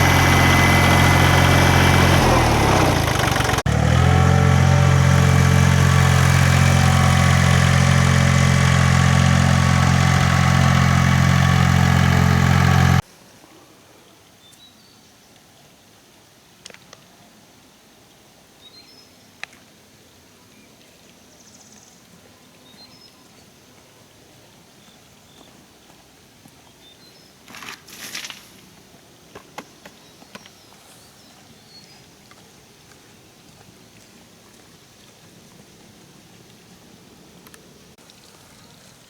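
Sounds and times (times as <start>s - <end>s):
brief rustle: 27.4s - 28.7s.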